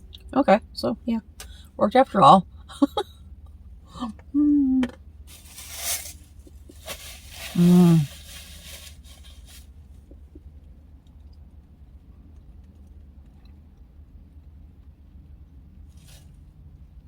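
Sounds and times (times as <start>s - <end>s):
woman humming: 4.0s - 5.0s, 7.6s - 8.1s
rustling: 5.3s - 10.0s.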